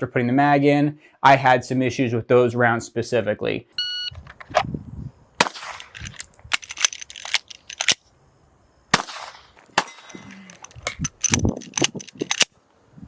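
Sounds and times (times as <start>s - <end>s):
pistol shots: 5.4s - 6.0s, 8.9s - 10.3s.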